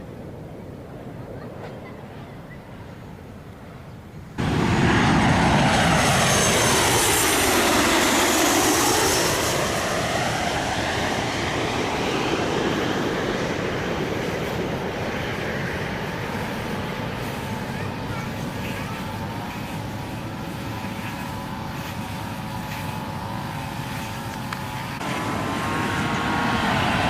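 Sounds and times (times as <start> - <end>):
airplane engines passing overhead: 0.0 - 27.0
high engine whine falling in pitch: 4.4 - 11.6.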